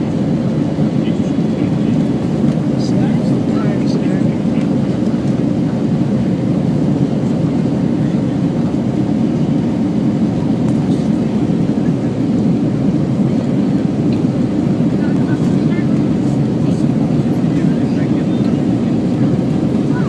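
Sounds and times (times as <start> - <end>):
jet engine and airflow noise in cabin: 0.0 - 20.0.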